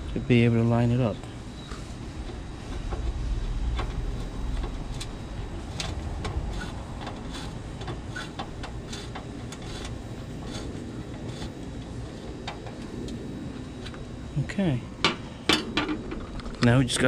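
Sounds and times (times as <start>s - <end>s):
low rumble: 1.2s - 8.9s.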